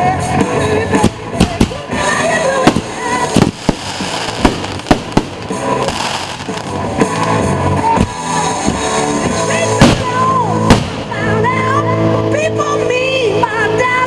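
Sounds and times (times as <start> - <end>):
music playing: 0.0 - 14.0
fireworks bangs: 0.9 - 11.7.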